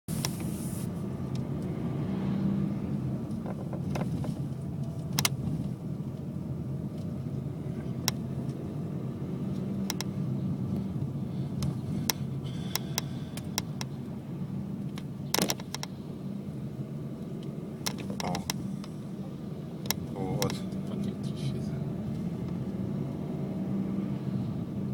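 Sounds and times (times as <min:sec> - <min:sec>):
car engine low rumble: 0:00.0 - 0:24.9
sharp knocks and clicks: 0:09.8 - 0:10.1, 0:11.6 - 0:14.0, 0:14.9 - 0:16.0, 0:17.8 - 0:19.0.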